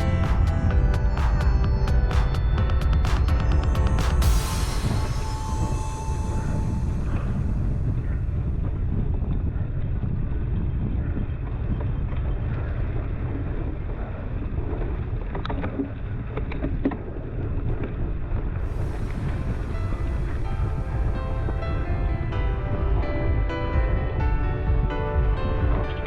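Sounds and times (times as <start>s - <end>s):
wind buffeting camera: 6.5s - 26.0s.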